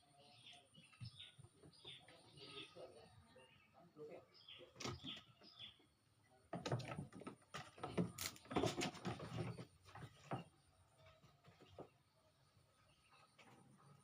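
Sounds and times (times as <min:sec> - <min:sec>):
knocks taps and rustles: 0:06.5 - 0:10.6.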